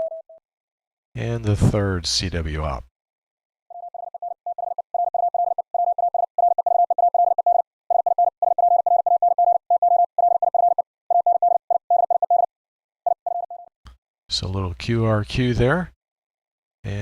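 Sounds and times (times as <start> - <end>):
morse code tone: 3.7 - 12.5.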